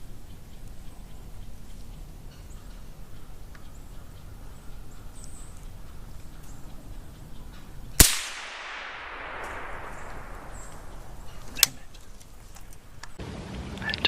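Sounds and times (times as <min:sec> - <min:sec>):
suppressed rifle shot with echo: 0:08.0 - 0:11.9.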